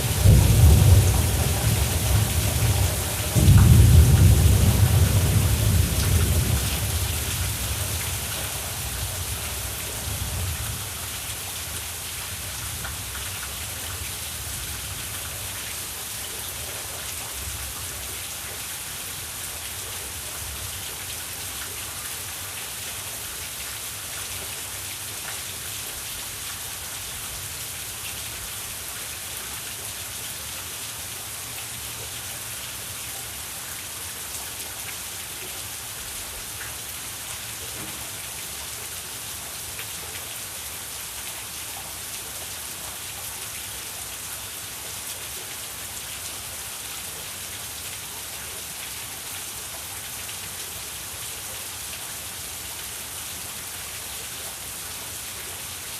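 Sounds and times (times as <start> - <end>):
thunder rumbling: 0.0 - 8.3
steady rain: 0.0 - 55.9.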